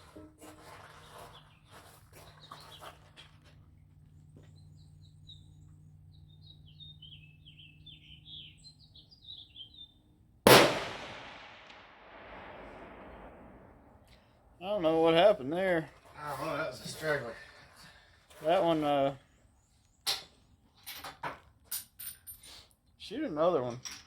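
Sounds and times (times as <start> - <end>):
small bird chirping: 4.1 - 10.1
rifle shot with echo: 10.5 - 14.0.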